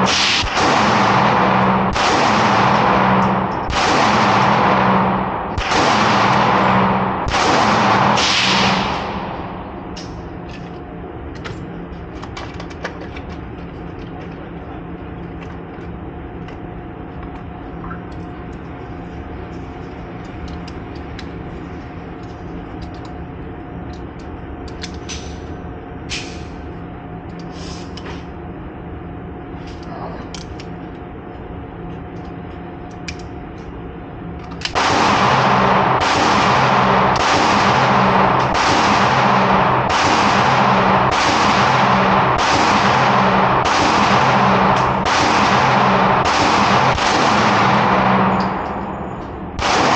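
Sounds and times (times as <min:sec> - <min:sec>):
loud gunfire: 0:00.0 - 0:10.0, 0:34.7 - 0:49.9
steady machine hum: 0:00.0 - 0:49.9.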